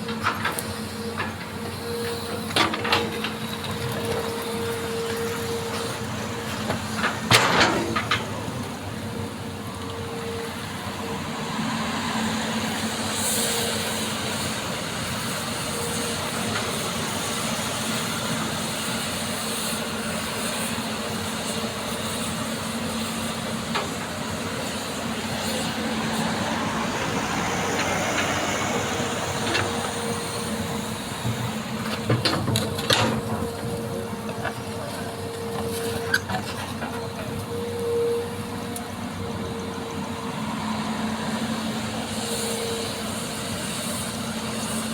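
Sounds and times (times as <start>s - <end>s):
excavator running: 0.0s - 44.9s
metal clanks and knocks: 7.0s - 8.6s, 31.2s - 34.6s.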